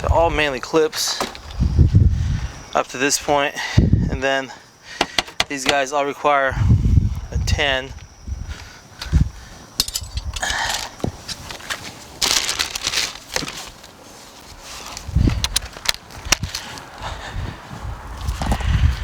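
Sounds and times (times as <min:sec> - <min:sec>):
rustling: 0:09.2 - 0:16.8.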